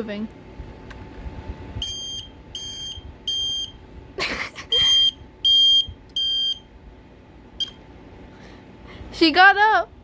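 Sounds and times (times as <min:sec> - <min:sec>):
smoke alarm beeping: 0:01.8 - 0:03.8, 0:04.7 - 0:06.7, 0:07.6 - 0:07.8.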